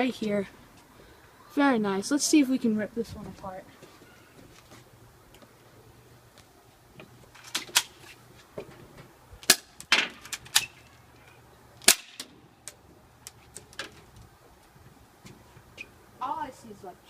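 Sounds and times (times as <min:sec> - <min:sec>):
airsoft pistol shots: 0:11.9 - 0:12.3.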